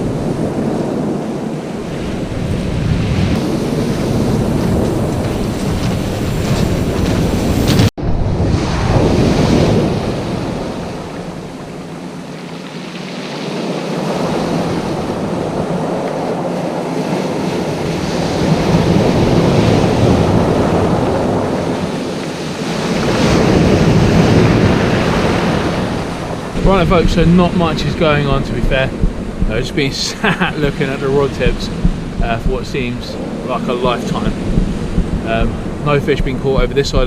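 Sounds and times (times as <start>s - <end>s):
sea surf washing onto beach: 0.0s - 37.0s
wind buffeting microphone: 0.0s - 37.0s.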